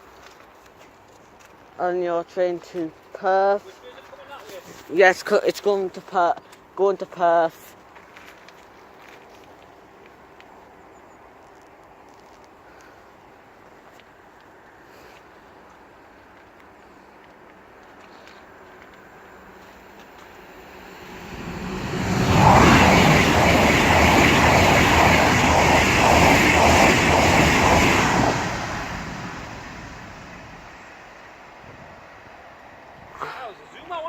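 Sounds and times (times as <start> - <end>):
passenger train passing: 18.4 - 33.1.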